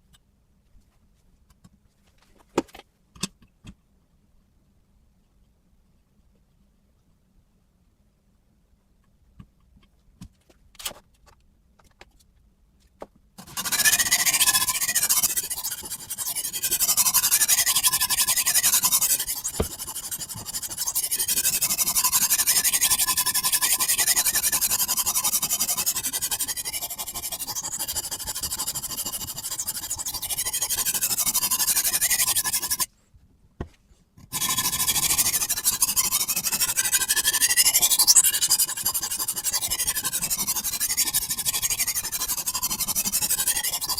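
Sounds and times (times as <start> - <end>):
knife scraping on sharpening stone: 13.4 - 32.9, 34.3 - 43.9.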